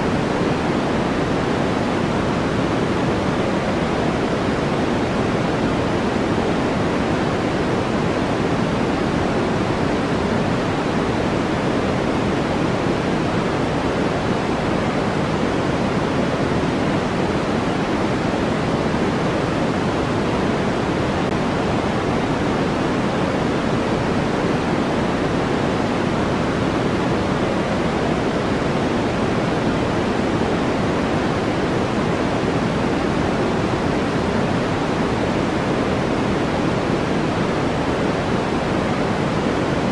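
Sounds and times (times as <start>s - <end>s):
steady pink noise hiss: 0.0s - 39.9s.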